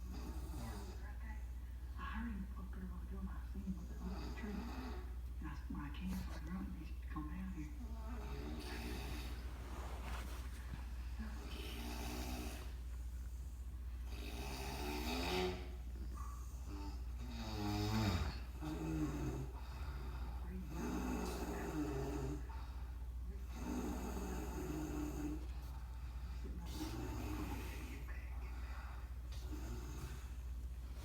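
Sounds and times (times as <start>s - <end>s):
steady low hum: 0.0s - 31.0s
man snoring: 11.4s - 12.8s, 14.0s - 15.9s, 16.6s - 22.6s, 23.4s - 25.5s, 26.7s - 28.0s, 29.4s - 30.4s.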